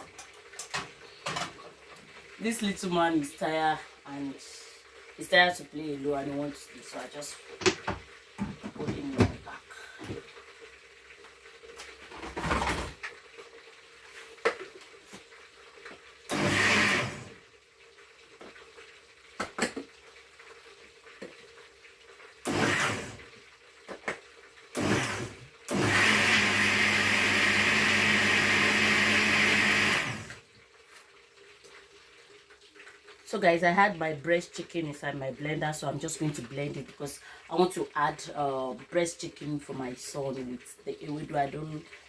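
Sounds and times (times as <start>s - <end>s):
electric blender motor: 16.3s - 17.4s, 22.4s - 23.3s, 24.8s - 30.4s.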